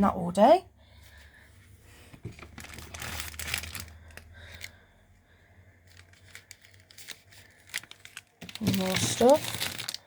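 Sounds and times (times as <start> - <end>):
plastic packaging crinkling: 2.2 - 4.8, 5.8 - 10.0.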